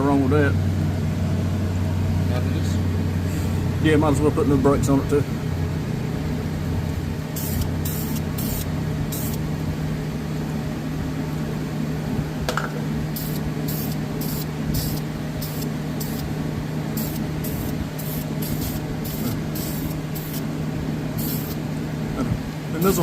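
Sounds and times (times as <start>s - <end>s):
fan humming: 0.0s - 23.0s
aerosol spray hissing: 7.4s - 9.4s, 13.2s - 16.3s, 17.0s - 20.5s, 21.2s - 21.6s.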